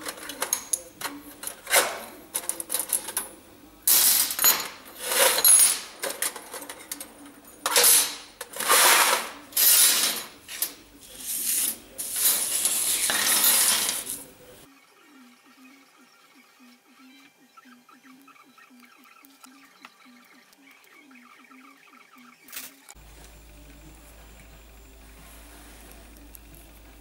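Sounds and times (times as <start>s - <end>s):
scraping strokes: 8.6s - 14.3s.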